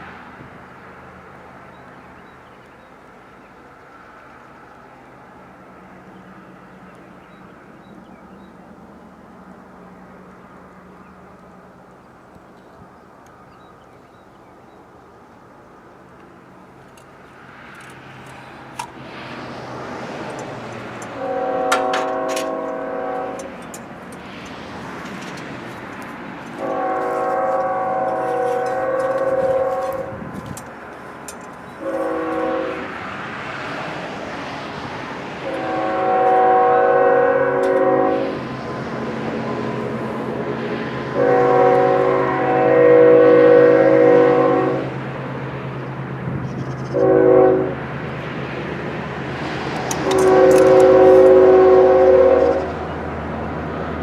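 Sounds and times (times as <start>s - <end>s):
train horn blasts: 21.0s - 23.9s, 26.5s - 30.5s, 31.7s - 33.0s, 35.4s - 38.6s, 41.0s - 45.0s, 46.9s - 47.9s, 49.9s - 53.0s.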